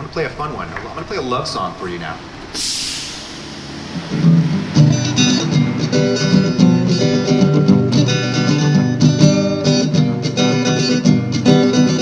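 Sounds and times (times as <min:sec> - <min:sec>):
acoustic guitar strumming: 0:02.9 - 0:12.0.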